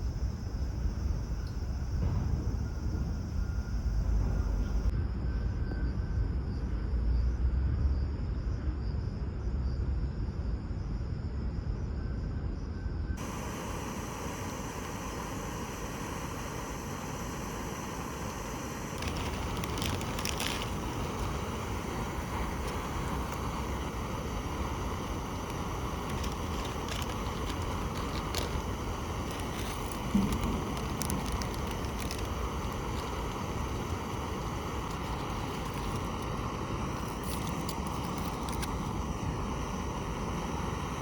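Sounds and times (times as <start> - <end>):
wind rumbling on microphone: 18.3 - 41.0.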